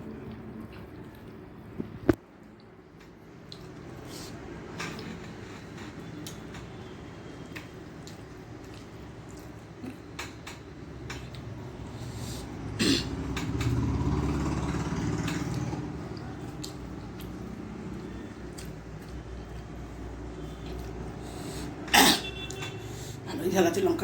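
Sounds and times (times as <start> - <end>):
person chewing: 0.1 - 6.4, 7.5 - 10.4, 15.3 - 21.5.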